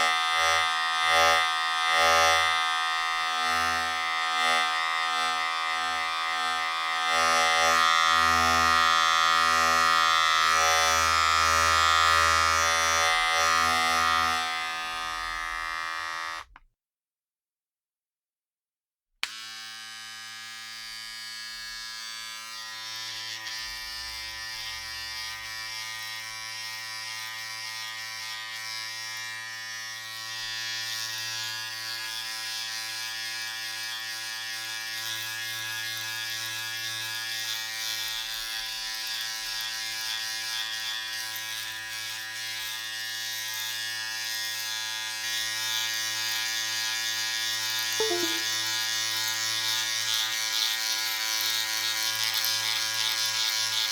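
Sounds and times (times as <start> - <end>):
electric razor buzzing: 0.0 - 16.6, 19.2 - 53.9
razor shaving hiss: 47.6 - 48.6.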